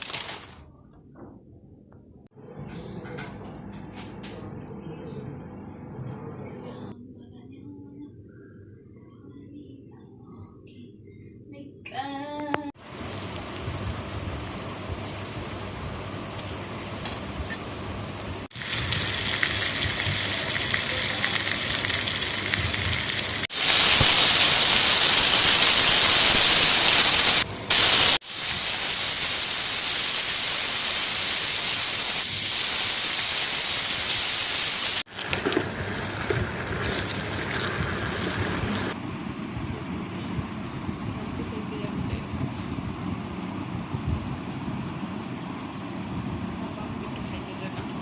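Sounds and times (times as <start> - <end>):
steady hiss: 12.8 - 35.1.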